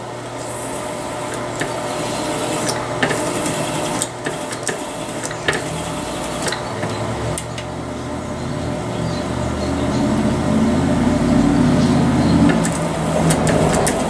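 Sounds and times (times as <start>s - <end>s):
motor hum: 0.0s - 14.0s
cutter rasping brass: 0.4s - 7.0s.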